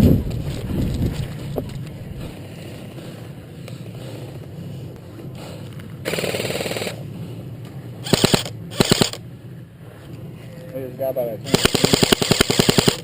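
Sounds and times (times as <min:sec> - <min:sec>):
airsoft guns firing bursts: 0:06.0 - 0:07.0, 0:08.1 - 0:09.2, 0:11.5 - 0:13.0.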